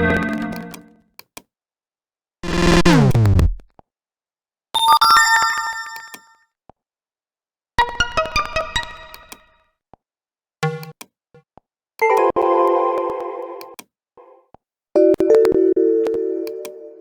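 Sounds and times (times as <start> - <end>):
notification tones: 0.0 - 0.8, 12.0 - 13.8, 15.0 - 17.0.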